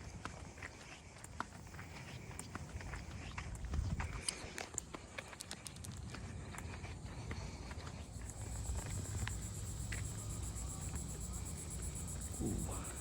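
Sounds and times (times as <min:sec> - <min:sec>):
insects trilling: 0:07.4 - 0:13.0.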